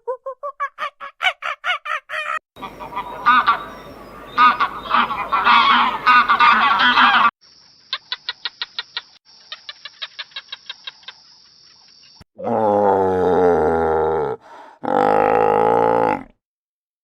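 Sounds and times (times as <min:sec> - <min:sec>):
geese honking: 0:02.6 - 0:07.3.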